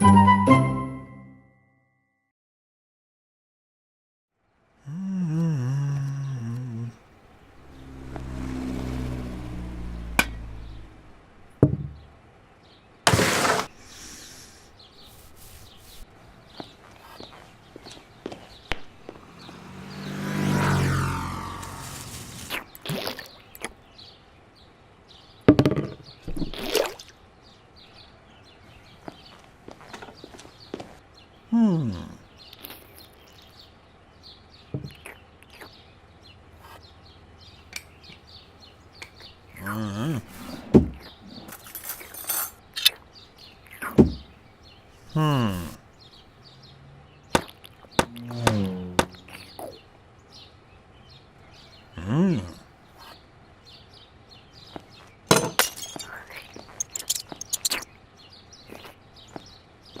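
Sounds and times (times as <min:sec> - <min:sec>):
faint bird chirping: 0:13.8 - 0:21.5, 0:22.5 - 0:41.5, 0:42.7 - 1:00.0
man groaning: 0:31.5 - 0:32.2, 0:45.1 - 0:45.8, 0:52.0 - 0:52.6
sharp clinks: 0:55.4 - 0:57.8
faint bird chirps: 0:55.9 - 1:00.0.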